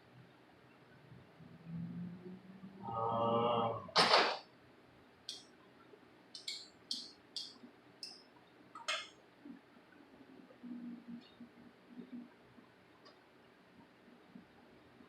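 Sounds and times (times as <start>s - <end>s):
sharp knock: 4.0s - 4.4s
small hard objects clicking: 6.4s - 8.2s.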